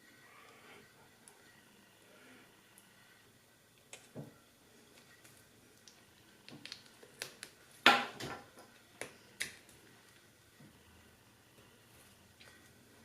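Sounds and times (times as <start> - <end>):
plastic crackling snap: 4.9 - 10.2.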